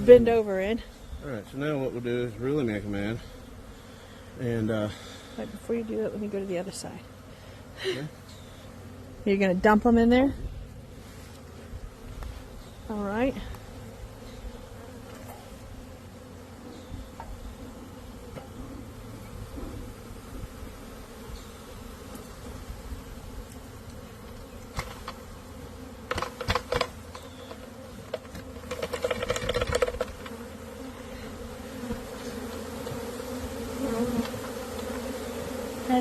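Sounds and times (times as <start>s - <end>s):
bees buzzing: 0.0s - 36.0s
knocks and clatter: 28.1s - 30.4s.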